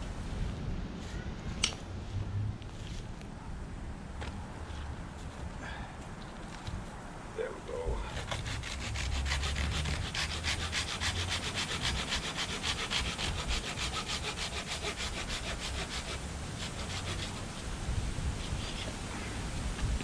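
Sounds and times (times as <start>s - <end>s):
wind rumbling on microphone: 0.0s - 5.5s, 16.2s - 20.0s
hand saw cutting wood: 8.1s - 17.6s.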